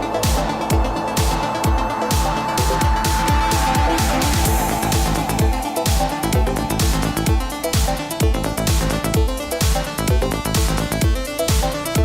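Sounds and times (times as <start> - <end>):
held synth tone: 0.0 - 9.0
kick drum beat: 0.0 - 12.0.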